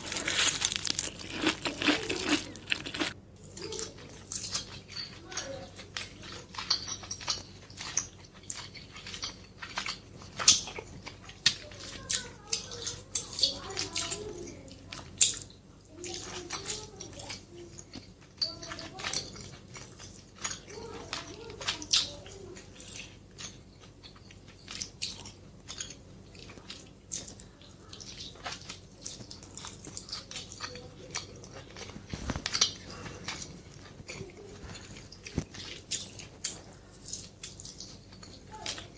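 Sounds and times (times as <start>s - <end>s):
short crisp crackles: 0.0s - 3.2s, 31.5s - 38.9s
person biting and chewing food: 0.0s - 5.2s, 5.8s - 11.6s, 22.7s - 38.9s.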